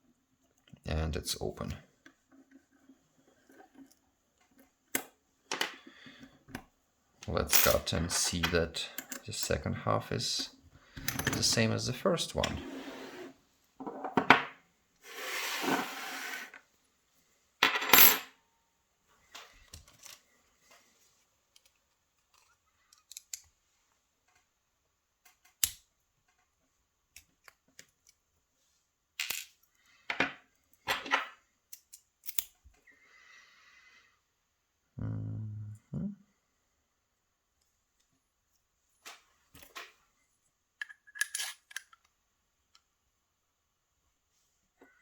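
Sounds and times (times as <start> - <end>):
small metal lock parts clinking: 7.5 - 9.6, 22.3 - 23.5, 31.7 - 32.6, 40.8 - 42.1.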